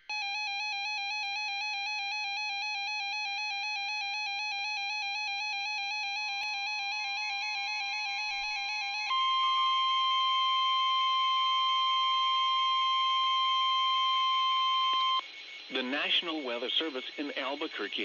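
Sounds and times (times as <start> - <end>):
single-pitch warning alarm tone: 0.0 - 17.5
warbling weather alert beep: 9.1 - 18.0.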